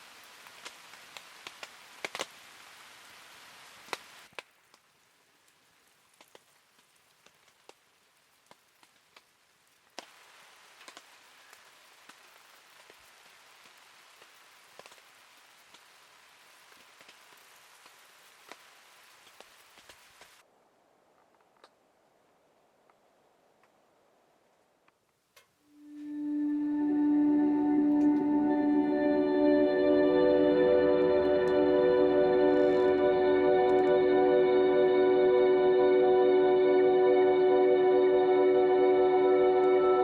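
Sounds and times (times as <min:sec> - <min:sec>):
raindrops tapping on a surface: 0:00.0 - 0:02.5, 0:03.8 - 0:20.4
rain hiss: 0:00.0 - 0:20.5, 0:25.6 - 0:40.0.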